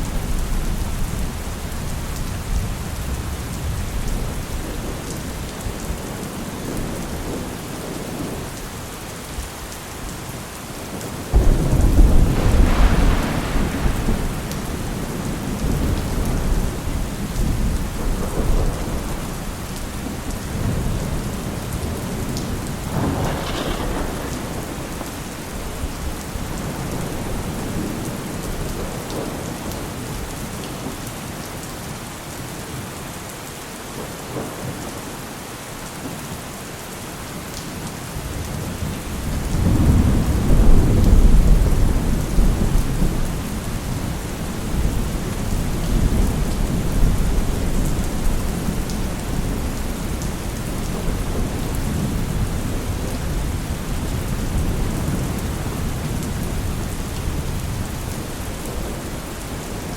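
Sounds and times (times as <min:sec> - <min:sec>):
heavy steady rain: 0:00.0 - 0:59.9
rolling thunder: 0:11.3 - 0:30.2, 0:38.3 - 0:59.8.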